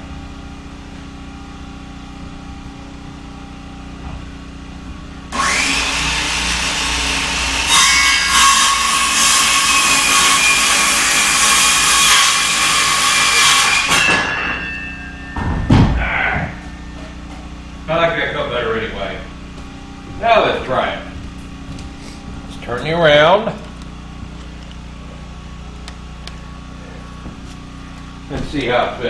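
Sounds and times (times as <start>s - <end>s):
generator hum: 0.0s - 29.0s
electric saw cutting wood: 5.3s - 19.4s.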